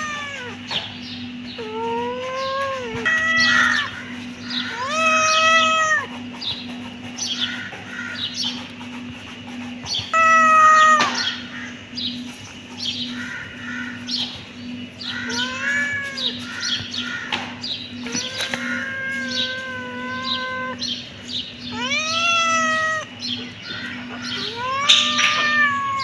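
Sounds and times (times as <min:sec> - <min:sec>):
kittens meowing: 0:00.0 - 0:06.6, 0:10.0 - 0:11.7, 0:15.0 - 0:26.0.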